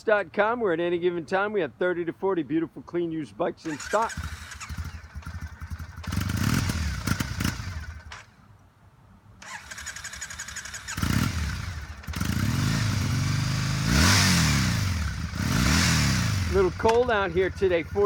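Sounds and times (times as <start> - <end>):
motorcycle engine starting and idling: 3.6 - 8.5, 9.4 - 18.0.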